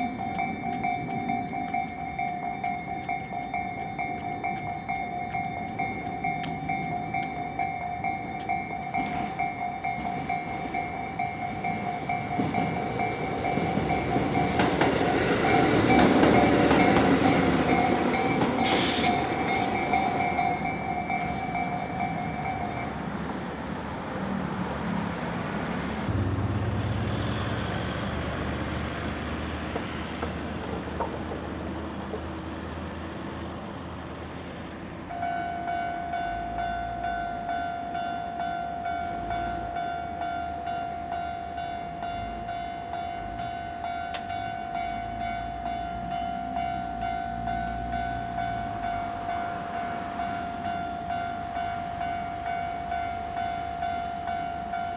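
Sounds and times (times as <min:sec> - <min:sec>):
crossing warning bell ringing: 0:00.0 - 0:24.1, 0:31.6 - 0:54.9
train rumbling: 0:00.0 - 0:54.9.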